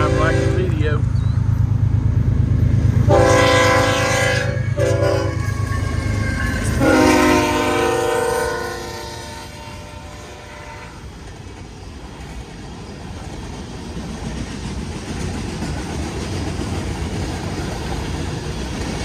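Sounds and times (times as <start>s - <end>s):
multi-note train air horn: 0.0s - 1.0s, 3.1s - 11.0s
diesel locomotive engine passing: 0.0s - 19.0s.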